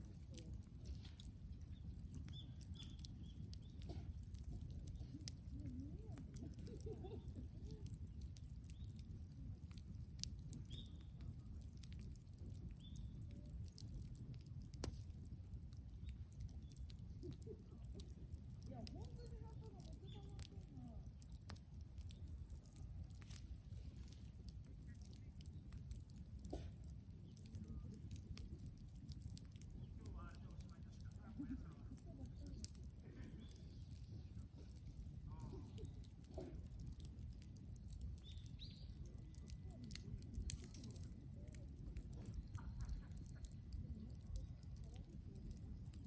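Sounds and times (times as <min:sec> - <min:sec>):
bonfire crackling and popping: 0:00.0 - 0:46.0
bird chirps: 0:01.7 - 0:03.9, 0:10.6 - 0:11.2, 0:38.2 - 0:39.0.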